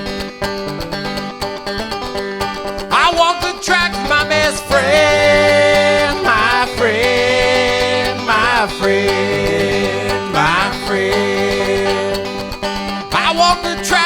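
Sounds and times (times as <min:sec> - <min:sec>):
plucked banjo: 0:00.0 - 0:14.0
person singing with vibrato: 0:02.9 - 0:12.4, 0:13.1 - 0:14.0.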